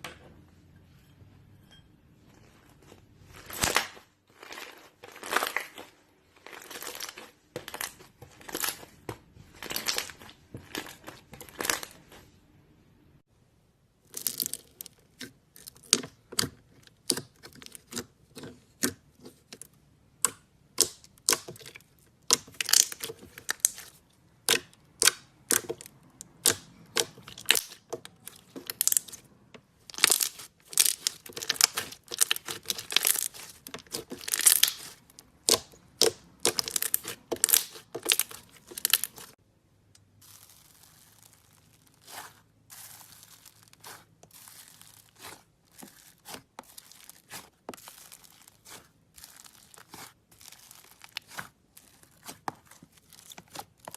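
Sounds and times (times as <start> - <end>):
slime crackling and popping: 20.3 - 29.2, 29.8 - 39.4, 40.1 - 53.9.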